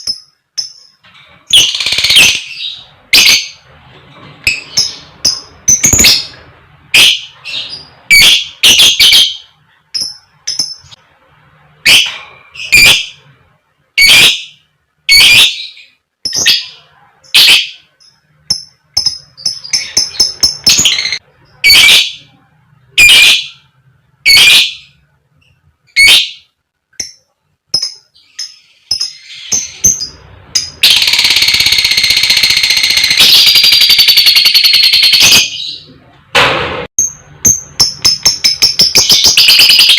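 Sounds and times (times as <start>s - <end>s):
lovebird pulsing chatter: 27.8s - 35.4s.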